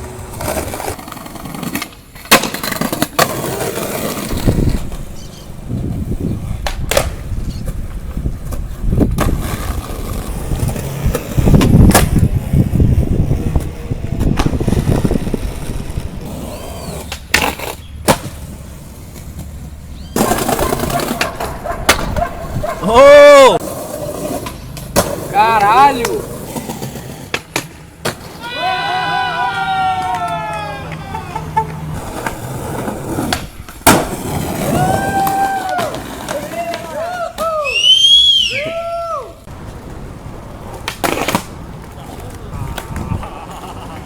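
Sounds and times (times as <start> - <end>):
skateboard clacking on ground: 0.0 - 28.4, 29.9 - 37.6, 39.4 - 44.0
skateboard wheels rolling: 0.0 - 44.0.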